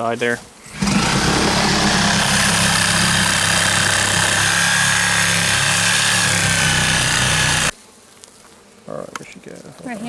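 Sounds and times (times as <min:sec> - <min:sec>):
power tool motor whine: 0:00.6 - 0:07.7.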